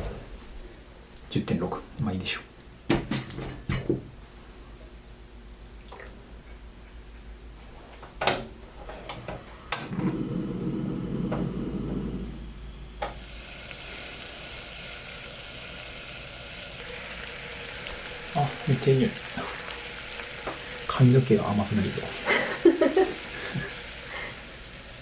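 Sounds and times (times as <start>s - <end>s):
kitchen clicks and knocks: 2.9s - 4.1s
caramel sizzling in a pan: 10.2s - 25.0s.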